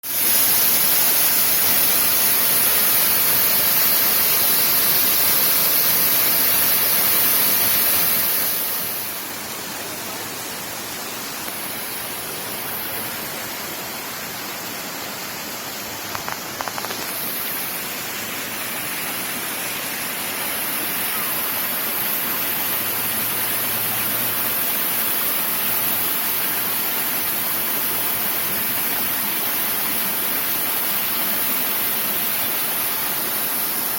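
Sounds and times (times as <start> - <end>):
waterfall rushing: 0.0 - 33.9
faint clicks: 16.1 - 17.2.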